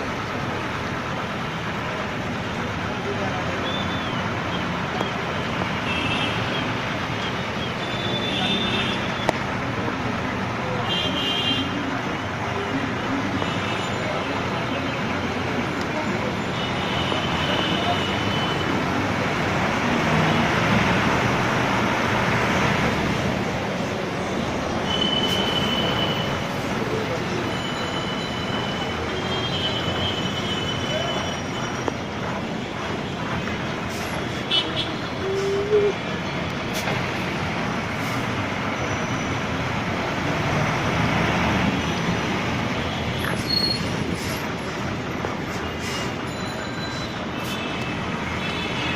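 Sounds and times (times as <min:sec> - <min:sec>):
road traffic rumble: 0:00.0 - 0:48.9.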